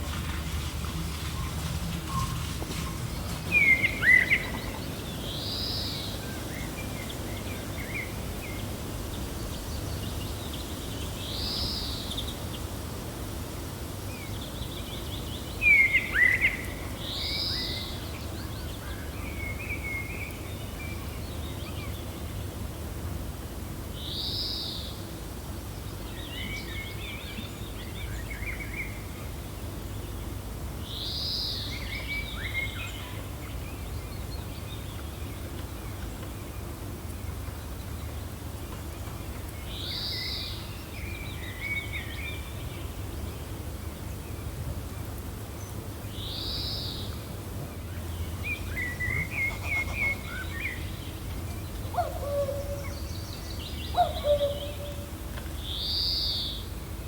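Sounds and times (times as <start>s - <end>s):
birds calling: 0.0s - 6.5s, 48.0s - 56.7s
gentle wind: 0.0s - 57.0s.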